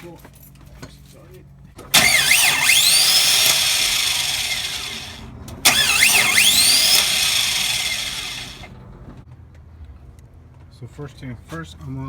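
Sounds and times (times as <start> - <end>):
starter motor whirring: 1.9 - 9.2.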